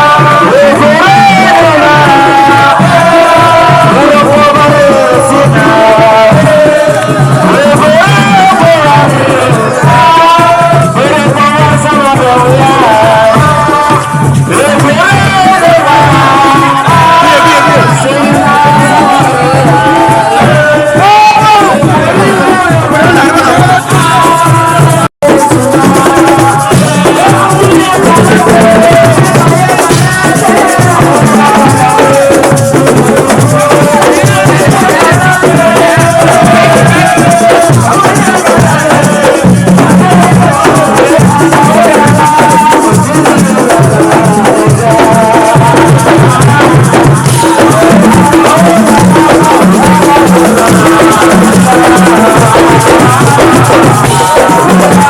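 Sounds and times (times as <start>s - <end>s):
loud music with drums: 0.0s - 55.0s
shaker rattling: 20.8s - 55.0s.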